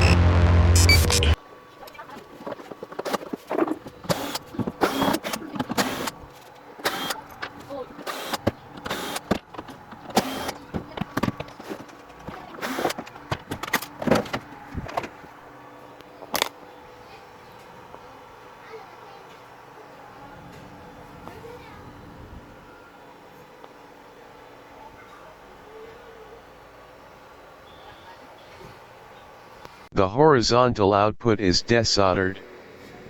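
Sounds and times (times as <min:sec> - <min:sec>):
hard objects clicking and knocking: 0:06.8 - 0:15.2.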